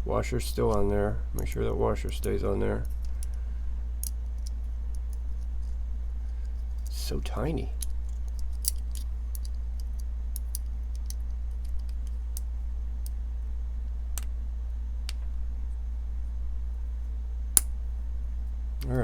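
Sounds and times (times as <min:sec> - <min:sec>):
steady low hum: 0:00.0 - 0:19.0
small knife parts clicking: 0:07.8 - 0:12.1.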